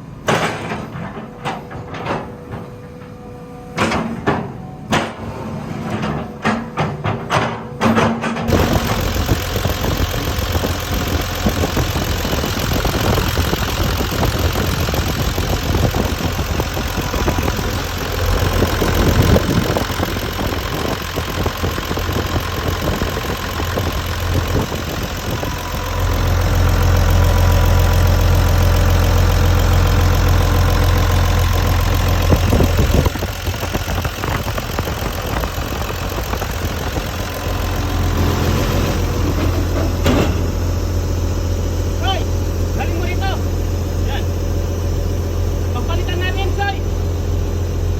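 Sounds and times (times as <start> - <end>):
excavator diesel engine running: 0.0 - 47.9.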